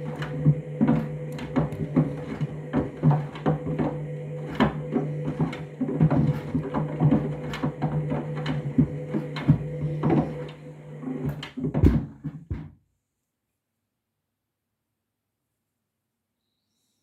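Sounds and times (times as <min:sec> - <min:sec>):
washing machine motor hum: 0:00.0 - 0:12.7
shoes knocking in washing drum: 0:00.0 - 0:12.8.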